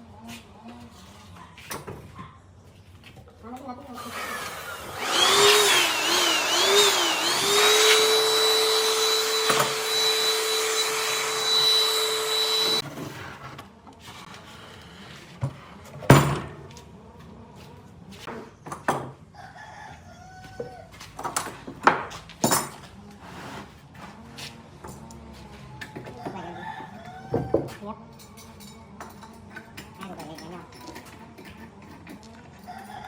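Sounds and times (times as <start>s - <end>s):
power tool motor whining hum: 4.0s - 12.8s.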